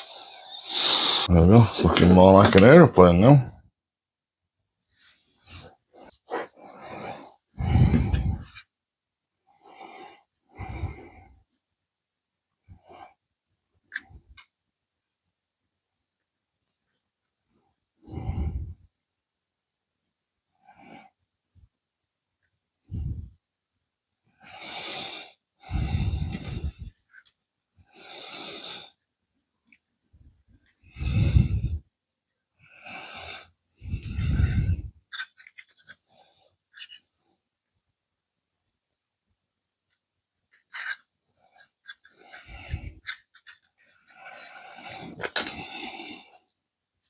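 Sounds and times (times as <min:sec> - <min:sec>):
person breathing close to microphone: 0:00.0 - 0:02.4, 0:05.0 - 0:08.6, 0:09.6 - 0:11.4, 0:18.1 - 0:18.9, 0:22.9 - 0:23.4, 0:24.4 - 0:27.0, 0:30.8 - 0:31.9, 0:32.7 - 0:35.0, 0:42.1 - 0:43.2.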